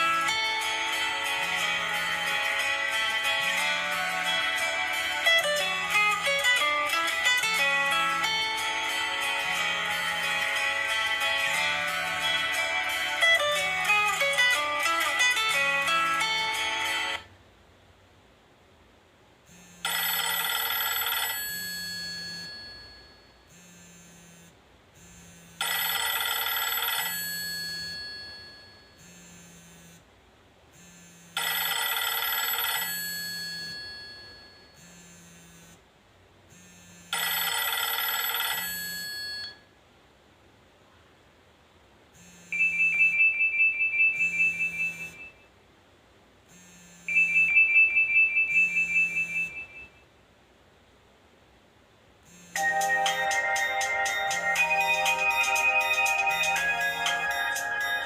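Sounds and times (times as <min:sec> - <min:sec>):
bell-like ringtone chime: 0:00.0 - 0:17.2, 0:19.8 - 0:23.6, 0:25.6 - 0:29.4, 0:31.4 - 0:34.9, 0:37.2 - 0:39.6, 0:47.1 - 0:49.8, 0:52.6 - 0:58.0
high two-note trill ringtone: 0:00.0 - 0:17.2, 0:19.5 - 0:24.5, 0:25.2 - 0:30.0, 0:31.4 - 0:35.7, 0:36.6 - 0:39.6, 0:42.2 - 0:45.4, 0:46.5 - 0:49.8, 0:52.3 - 0:58.0.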